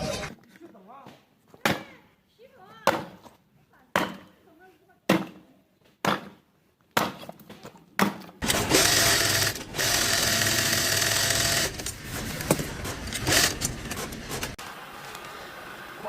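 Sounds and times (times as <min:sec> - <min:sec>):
small power tool running: 0:08.4 - 0:14.6.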